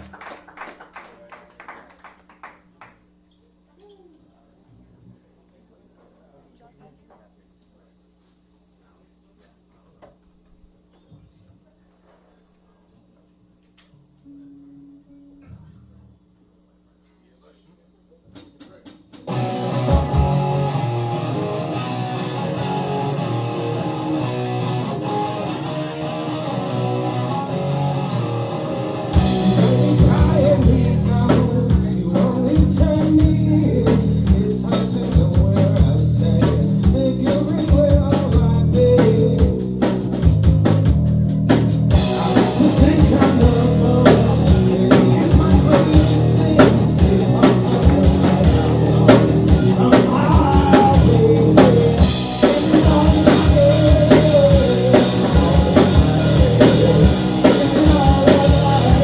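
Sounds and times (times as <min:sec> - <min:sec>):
drum kit beat: 0:18.2 - 0:59.0
rock band playing: 0:19.1 - 0:59.0
guitar intro: 0:19.2 - 0:59.0
person singing: 0:29.2 - 0:39.8, 0:42.0 - 0:59.0.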